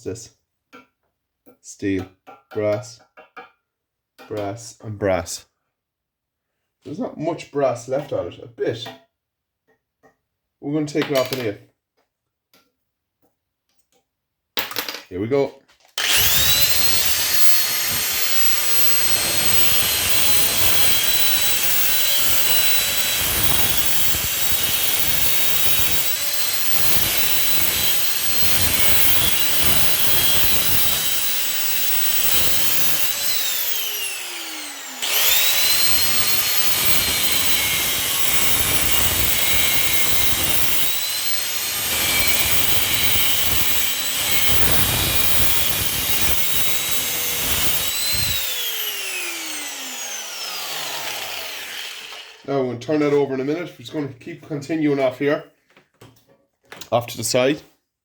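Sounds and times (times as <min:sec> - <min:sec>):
angle grinder cutting metal: 0:16.0 - 0:52.5.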